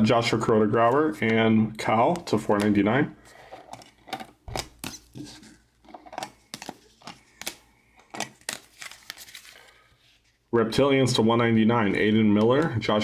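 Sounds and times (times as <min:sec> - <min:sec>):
trading cards clicking and sliding: 0:03.7 - 0:09.6.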